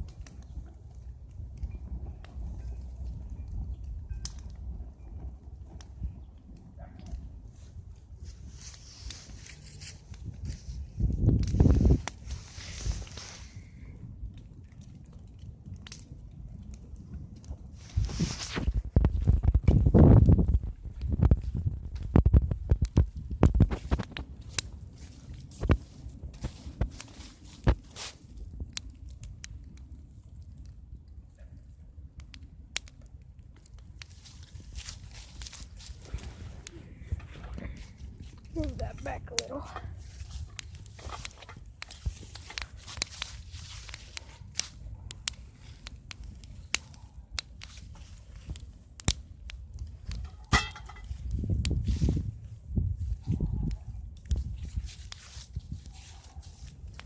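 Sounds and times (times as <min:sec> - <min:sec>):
fire crackling and popping: 0:00.0 - 0:57.0
low rumble: 0:35.7 - 0:38.9.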